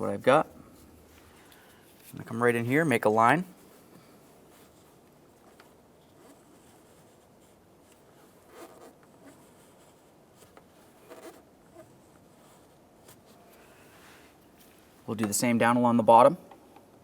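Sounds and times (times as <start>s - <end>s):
marker scratching: 4.5s - 13.3s.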